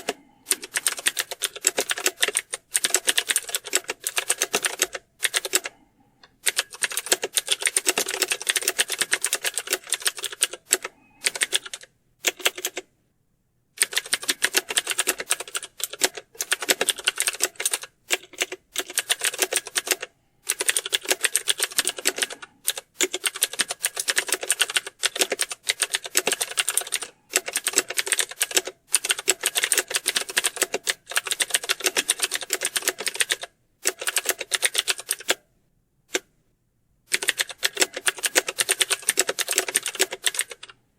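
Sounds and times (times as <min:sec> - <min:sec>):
fast keyboard typing: 0:00.0 - 0:05.8, 0:06.4 - 0:12.8, 0:13.8 - 0:35.4, 0:37.1 - 0:40.8.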